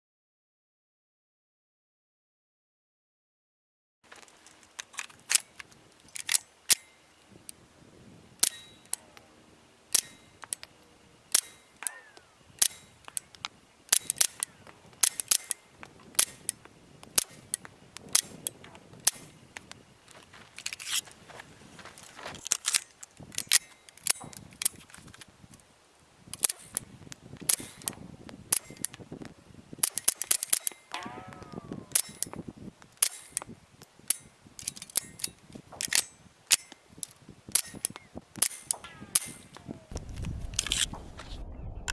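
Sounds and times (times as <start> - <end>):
suppressed pistol shots: 29.8 - 32.4, 37.5 - 41.3.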